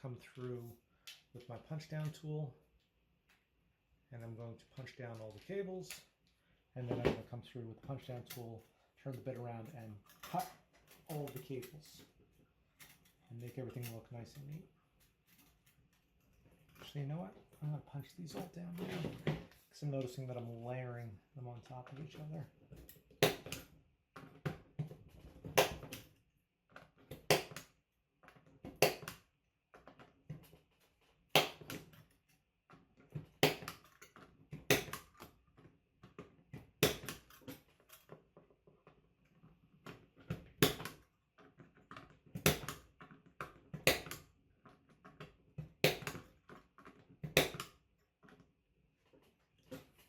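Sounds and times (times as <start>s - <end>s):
punch-down tool snapping: 23.2s - 23.6s, 25.6s - 26.0s, 27.3s - 27.6s, 28.8s - 29.2s, 31.4s - 31.8s, 33.4s - 33.8s, 34.7s - 35.1s, 36.8s - 37.3s, 40.6s - 41.0s, 42.4s - 42.8s, 43.8s - 44.2s, 45.8s - 46.2s, 47.4s - 47.7s.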